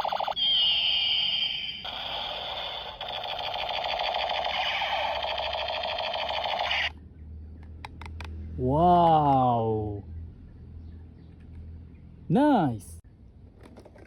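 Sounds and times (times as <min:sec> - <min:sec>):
warbling electronic toy tone: 0:00.0 - 0:06.9.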